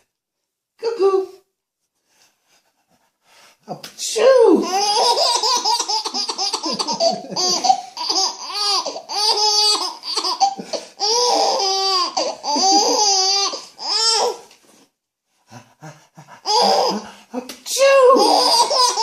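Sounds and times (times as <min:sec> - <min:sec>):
baby laughing: 0:04.5 - 0:14.5, 0:16.2 - 0:17.2, 0:18.0 - 0:19.0.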